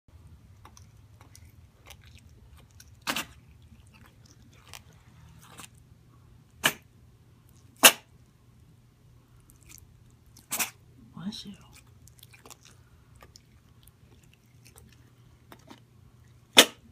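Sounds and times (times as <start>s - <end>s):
pet sneezing: 10.4s - 10.8s.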